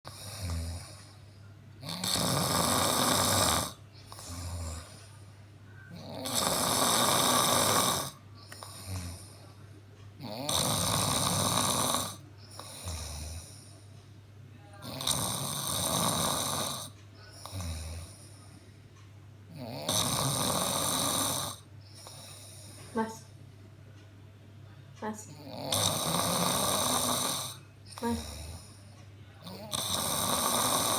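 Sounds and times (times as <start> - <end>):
man snoring: 0.1 - 1.1, 1.8 - 5.0, 5.9 - 9.4, 10.2 - 13.6, 14.8 - 18.2, 19.5 - 22.6, 25.4 - 28.8, 29.4 - 30.9.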